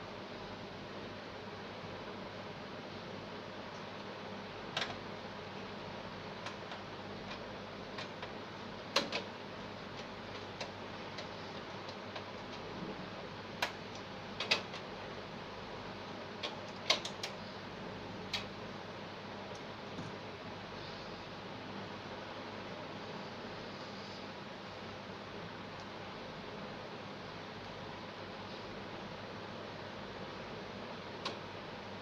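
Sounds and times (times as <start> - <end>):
steady hiss: 0.0 - 32.0
small clicks and taps: 6.4 - 9.3, 13.6 - 14.9.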